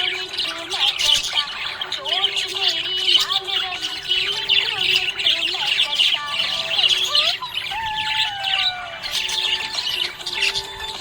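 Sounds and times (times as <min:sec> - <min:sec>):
budgerigar chattering and chirping: 0:00.0 - 0:11.0.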